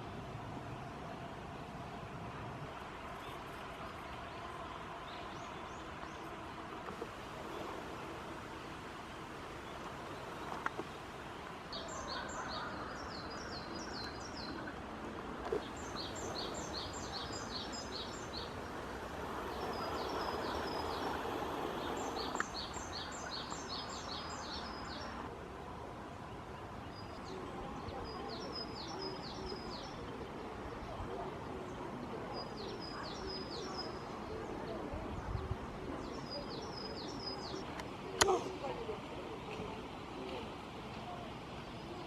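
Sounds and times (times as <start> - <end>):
stream rushing: 0.3 - 27.4
songbird singing: 3.1 - 14.8, 15.4 - 25.3, 26.2 - 38.5.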